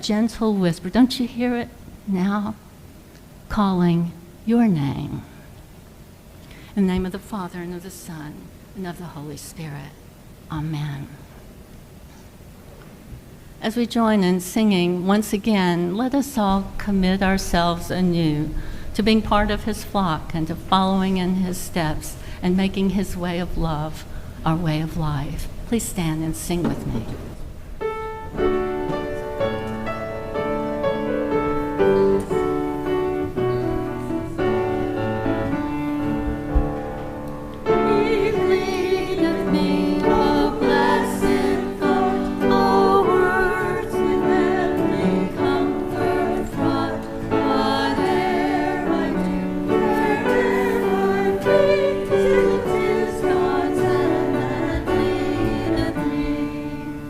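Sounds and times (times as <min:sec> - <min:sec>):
instrumental accompaniment: 0:27.8 - 0:57.0
congregation singing a hymn: 0:28.3 - 0:57.0.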